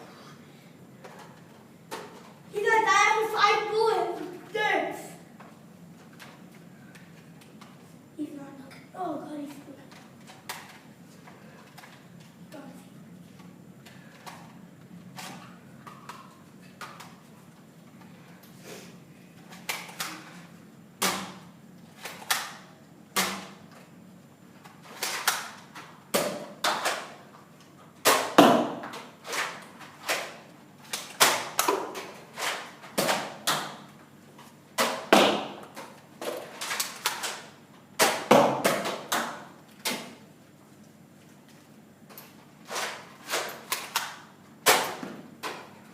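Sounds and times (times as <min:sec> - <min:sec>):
foam darts hitting surfaces: 0:25.0 - 0:27.1, 0:28.0 - 0:30.3, 0:30.9 - 0:33.9, 0:34.8 - 0:37.3, 0:38.0 - 0:40.2.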